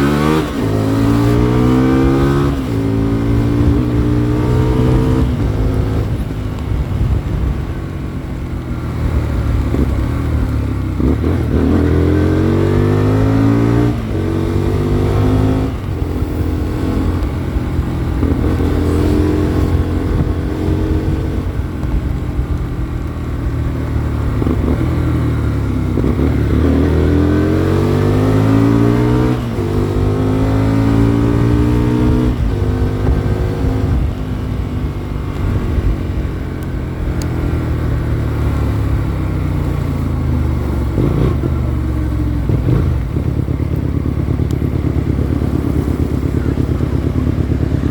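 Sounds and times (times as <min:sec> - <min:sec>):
motorcycle engine accelerating: 0:00.0 - 0:47.9
wind buffeting microphone: 0:00.4 - 0:23.0, 0:24.4 - 0:38.2.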